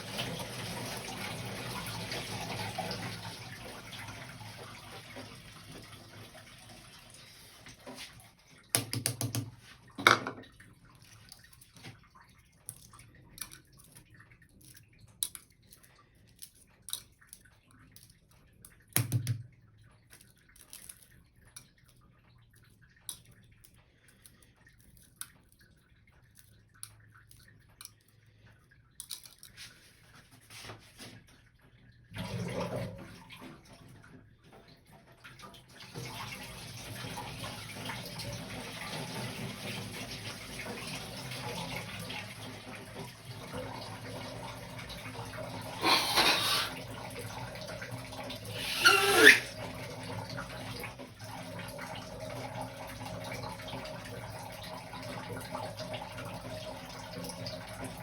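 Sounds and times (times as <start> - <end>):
water running from a tap: 0.0 - 29.9, 30.5 - 58.0
kitchenware clicking and knocking: 8.8 - 10.4.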